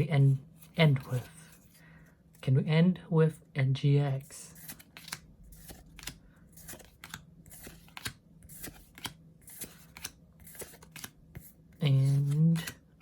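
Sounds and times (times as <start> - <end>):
trading cards clicking and sliding: 4.6 - 12.8.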